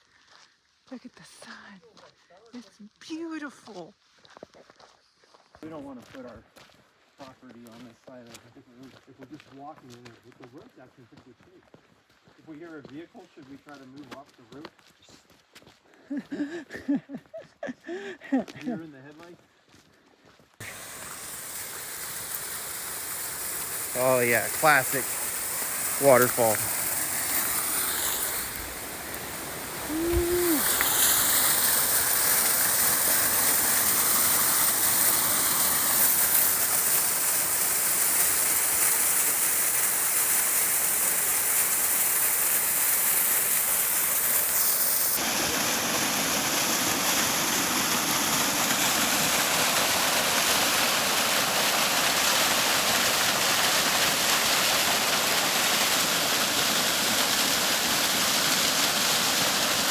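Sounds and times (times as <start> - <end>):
waterfall rushing: 20.6 - 59.9.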